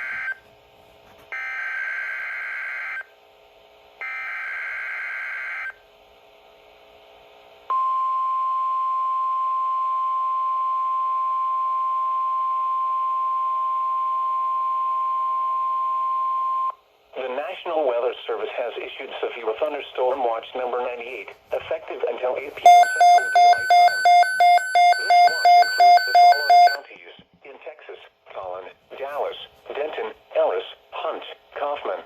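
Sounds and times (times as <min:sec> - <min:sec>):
steady single-pitch alarm tone: 0:01.4 - 0:03.1, 0:04.0 - 0:05.8, 0:22.6 - 0:26.8.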